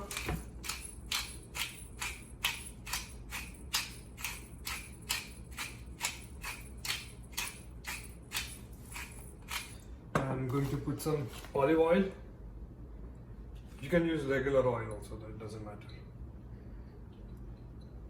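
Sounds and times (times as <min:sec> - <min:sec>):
pepper grinder rasping: 0:00.0 - 0:09.8.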